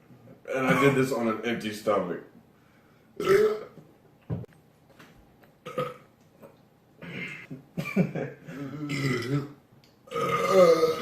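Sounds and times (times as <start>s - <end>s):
person burping: 3.2s - 3.8s, 5.6s - 6.1s, 7.0s - 7.5s, 8.5s - 11.0s.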